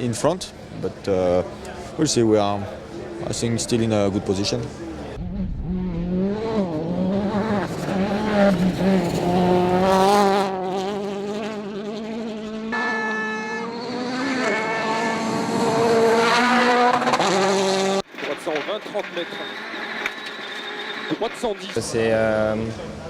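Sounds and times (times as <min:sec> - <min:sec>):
rally car engine revving: 0:04.5 - 0:18.1.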